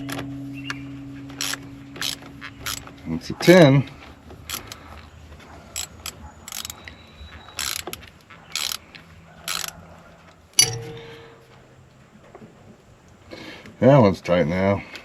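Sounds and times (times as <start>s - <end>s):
sharp metallic clink: 0.0s - 4.8s, 5.8s - 6.9s, 10.6s - 11.7s
ratchet wrench ratcheting: 1.4s - 2.9s, 4.5s - 4.8s, 5.8s - 6.9s, 7.6s - 8.8s, 9.4s - 9.8s.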